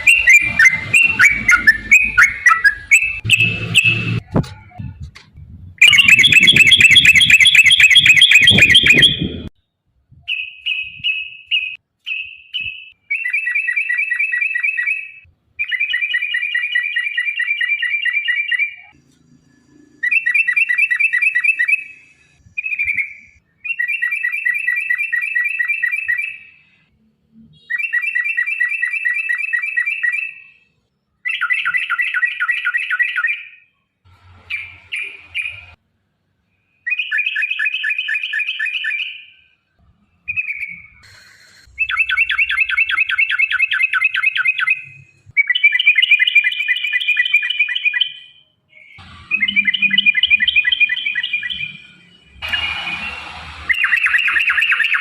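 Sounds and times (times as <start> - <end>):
bulbul singing rolling trills: 5.8 - 9.5, 36.9 - 52.3, 53.7 - 55.0.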